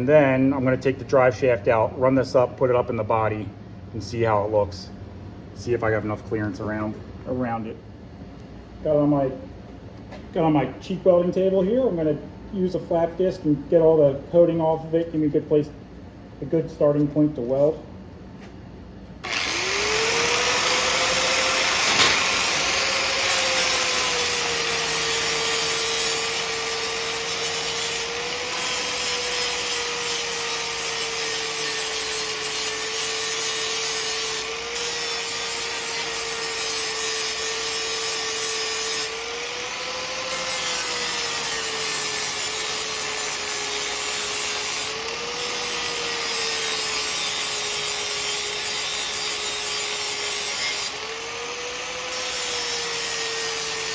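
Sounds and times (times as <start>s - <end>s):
angle grinder motor whining: 19.2s - 53.9s.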